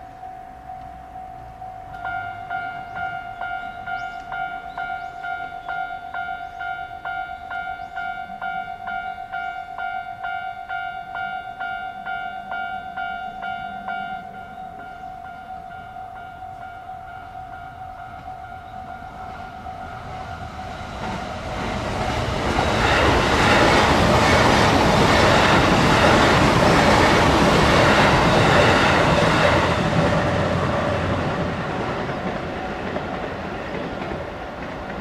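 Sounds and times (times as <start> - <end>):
level crossing warning bell: 0.0 - 32.4
electric train passing: 0.0 - 35.0
wheels clattering on rail joints: 18.1 - 35.0.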